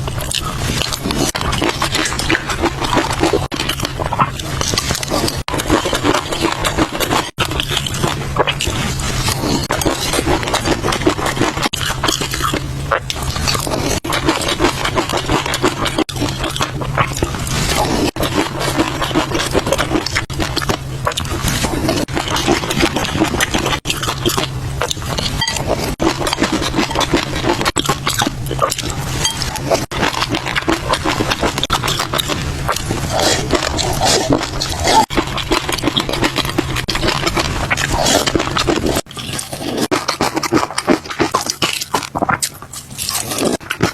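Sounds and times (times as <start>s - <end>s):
wet chewing clicks and crackles: 0.0s - 43.9s.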